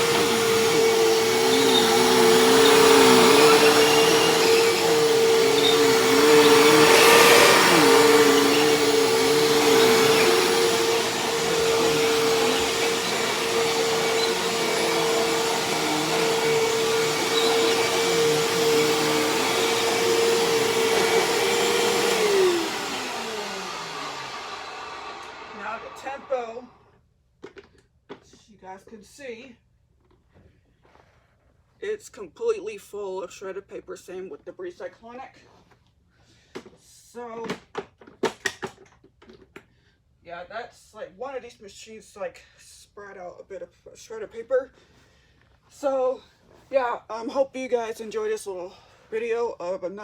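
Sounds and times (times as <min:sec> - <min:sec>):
motor winding down whine: 0:00.0 - 0:26.3
vacuum cleaner running: 0:00.0 - 0:26.7.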